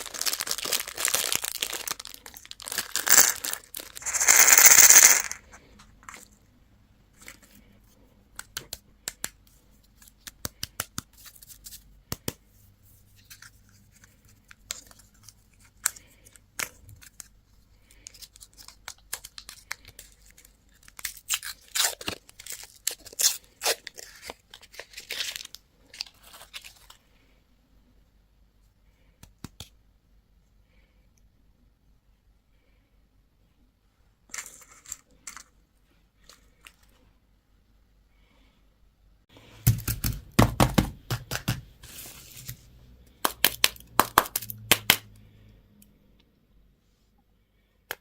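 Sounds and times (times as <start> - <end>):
candy wrapper crackling and tearing: 0.0 - 5.5, 14.7 - 27.0.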